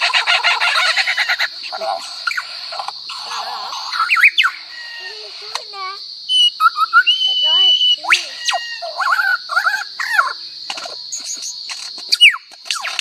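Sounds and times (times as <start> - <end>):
lyrebird singing: 0.0 - 13.0
steady high hiss: 0.1 - 8.6.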